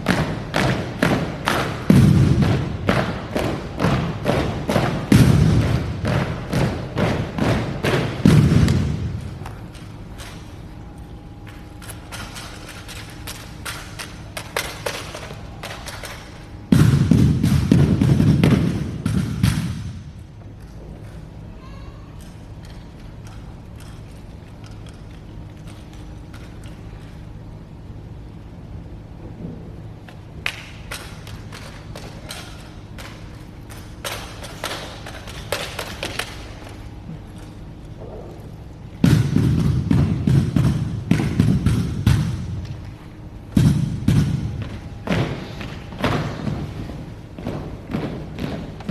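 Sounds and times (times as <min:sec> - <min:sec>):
rifles slapping and clacking: 0:05.6 - 0:16.8, 0:22.2 - 0:27.2, 0:30.0 - 0:38.7.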